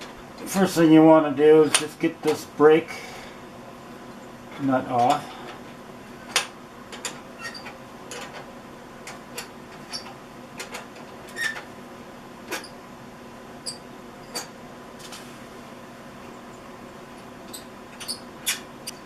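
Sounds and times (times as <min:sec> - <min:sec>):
faint steady hum: 0:00.0 - 0:19.0
short squeaks: 0:07.4 - 0:07.8, 0:11.3 - 0:11.7, 0:17.5 - 0:19.0.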